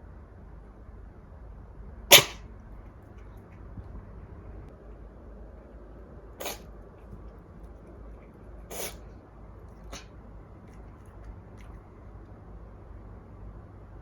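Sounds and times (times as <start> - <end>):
kitten sneezing: 2.1 - 2.4, 6.4 - 6.7, 8.6 - 9.1, 9.8 - 10.1.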